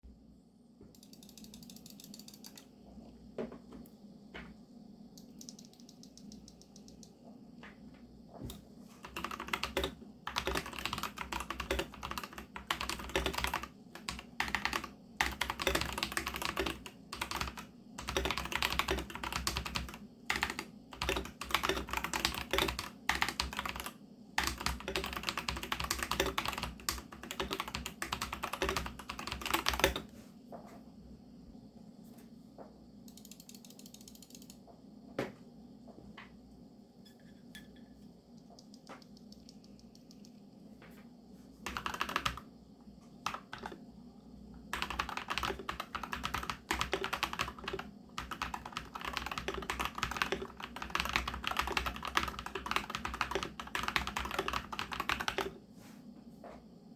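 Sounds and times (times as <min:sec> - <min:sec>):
typing on mechanical keyboard: 0:01.0 - 0:02.7, 0:08.5 - 0:30.1, 0:41.6 - 0:42.5, 0:43.2 - 0:43.8, 0:44.7 - 0:55.6.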